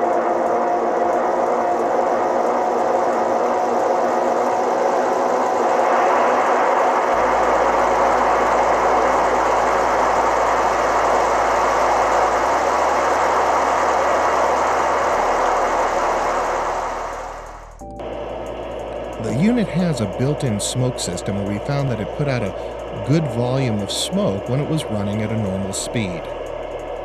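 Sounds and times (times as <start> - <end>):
electric locomotive running sound: 0.0 - 27.0.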